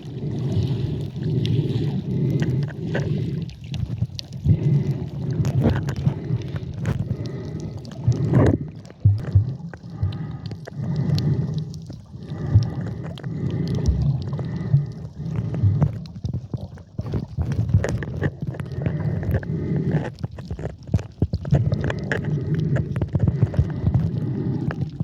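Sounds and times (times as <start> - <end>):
muffled underwater sloshing: 0.0 - 25.0
small clicks and crackles: 0.0 - 25.0.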